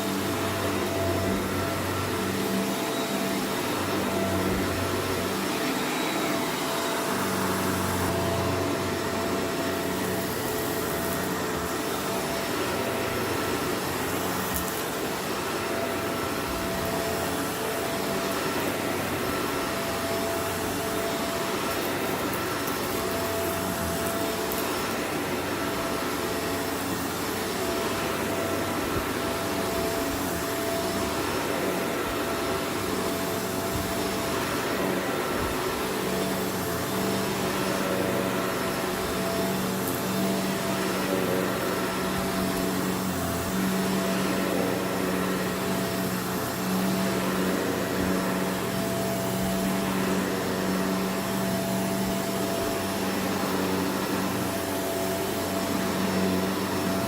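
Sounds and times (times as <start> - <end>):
vacuum cleaner running: 0.0 - 57.0.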